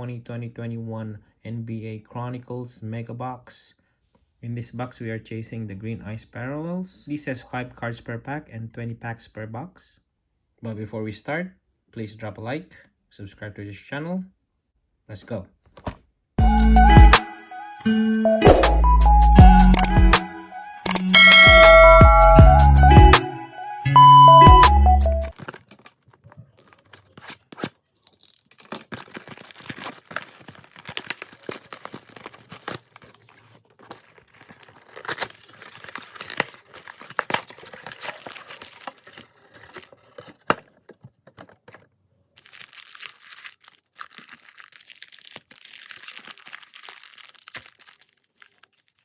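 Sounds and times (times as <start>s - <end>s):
plastic wrapping crinkling: 25.3s - 49.0s.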